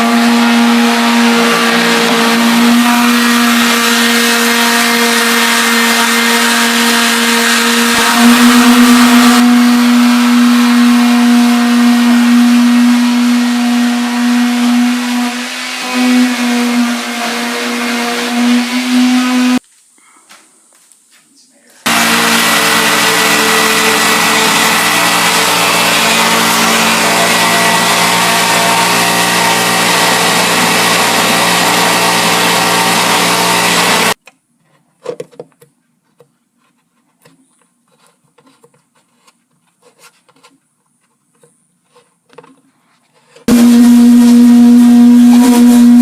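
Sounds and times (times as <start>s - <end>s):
electric power tool motor running: 0.0s - 19.6s, 21.9s - 34.2s, 43.5s - 46.0s.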